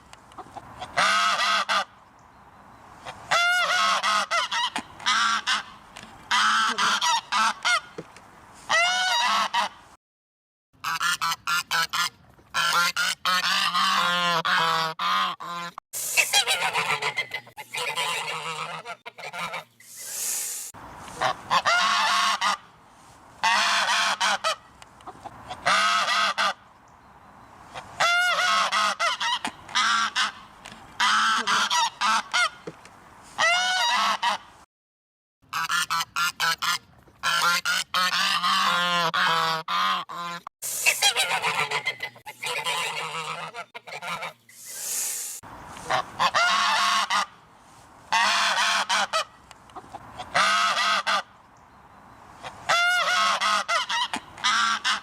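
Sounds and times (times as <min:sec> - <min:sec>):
geese honking: 0:00.3 - 0:02.0, 0:03.0 - 0:08.0, 0:08.7 - 0:09.8, 0:10.8 - 0:19.8, 0:21.0 - 0:22.7, 0:23.4 - 0:26.6, 0:27.7 - 0:32.6, 0:33.4 - 0:34.5, 0:35.5 - 0:44.5, 0:45.8 - 0:47.4, 0:48.1 - 0:51.3, 0:52.4 - 0:55.0.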